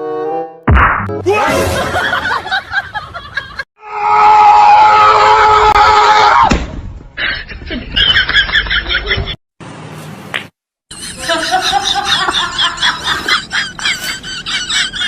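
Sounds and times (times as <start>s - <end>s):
loud scream-like cry: 3.8s - 6.5s.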